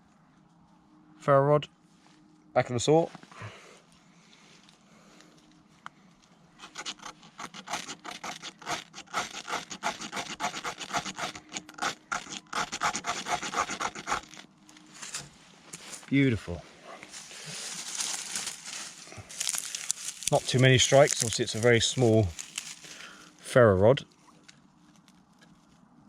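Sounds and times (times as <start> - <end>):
ferro rod scraping: 6.6 - 16.0.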